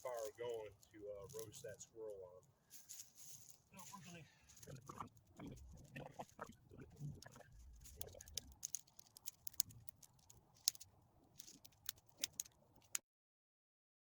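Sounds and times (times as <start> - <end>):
muffled rustling: 0.0 - 8.6
dry twigs crackling and snapping: 0.0 - 13.0.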